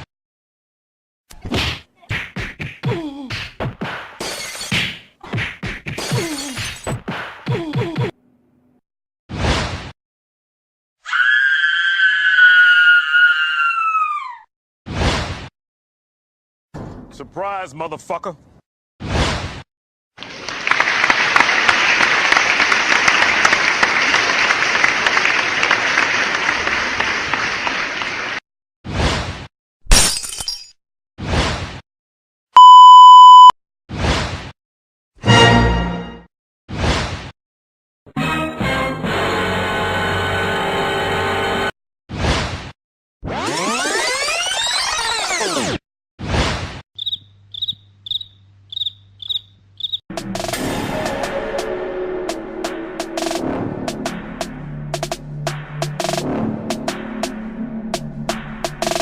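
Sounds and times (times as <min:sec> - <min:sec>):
crowd applauding: 0:20.2 - 0:28.4.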